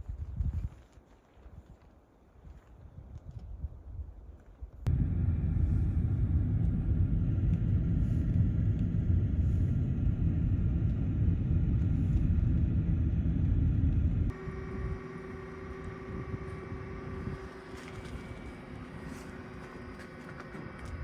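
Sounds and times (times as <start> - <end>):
vehicle low rumble: 4.8 - 21.0.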